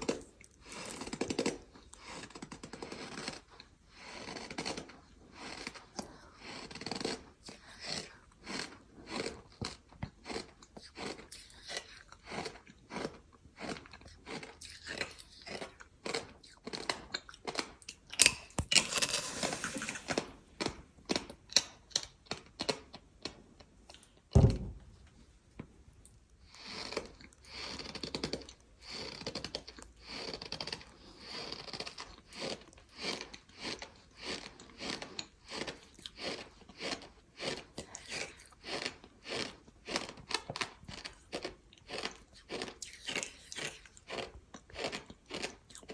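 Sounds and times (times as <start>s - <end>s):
heavy thud: 24.4s - 25.0s.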